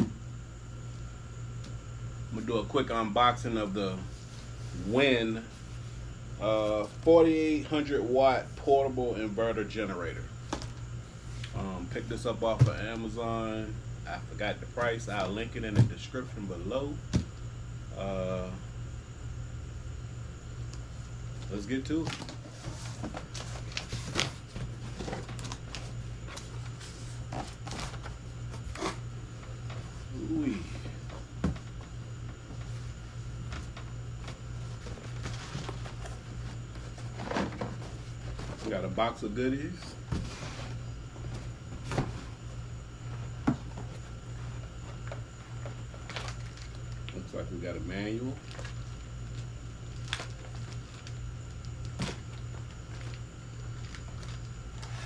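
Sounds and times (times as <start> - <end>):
steady low hum: 0.0 - 55.0
cardboard rustling and clicking: 21.9 - 29.0
packaging rustling: 44.7 - 47.2, 48.4 - 55.0.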